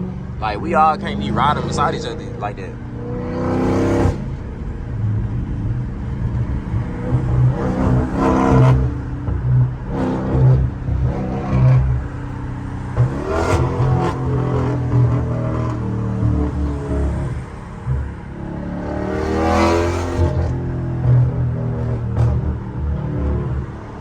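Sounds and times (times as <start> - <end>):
car exhaust droning: 0.0 - 24.0
exhaust pops: 20.1 - 23.7.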